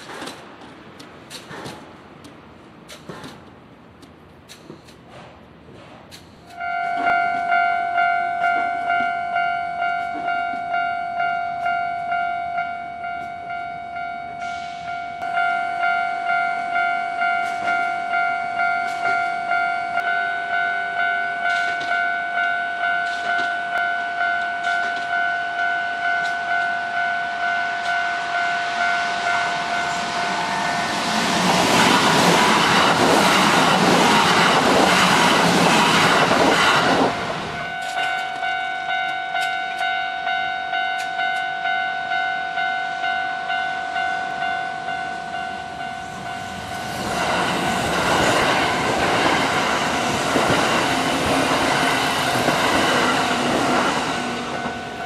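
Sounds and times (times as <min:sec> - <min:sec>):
train wheels clattering over rails: 0:00.0 - 0:07.1, 0:29.7 - 0:38.5, 0:46.9 - 0:55.0
level crossing bell ringing: 0:06.6 - 0:30.4, 0:37.6 - 0:46.9.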